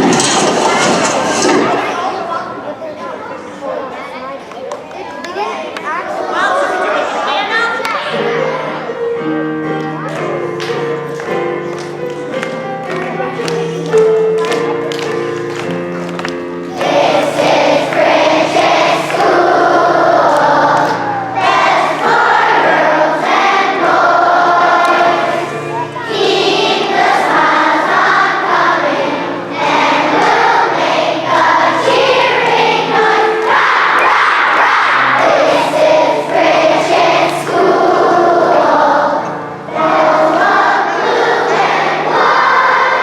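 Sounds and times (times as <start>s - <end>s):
held musical notes: 8.2s - 43.0s
children singing together: 16.6s - 43.0s.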